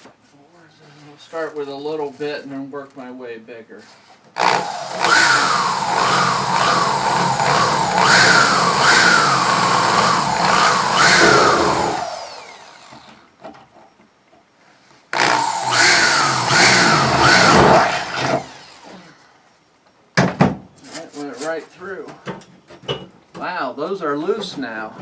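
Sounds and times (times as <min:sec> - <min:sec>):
electric drill whining: 0:04.4 - 0:13.3, 0:15.2 - 0:19.2.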